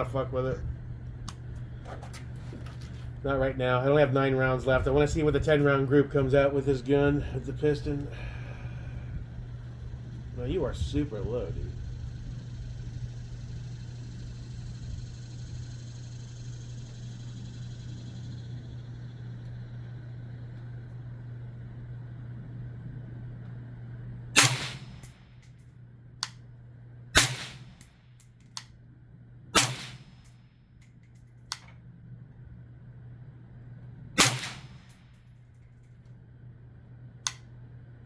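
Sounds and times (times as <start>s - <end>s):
steady low hum: 0.0s - 38.0s
suppressed rifle shots: 24.4s - 25.2s, 27.2s - 28.0s, 29.6s - 30.4s, 34.2s - 35.0s.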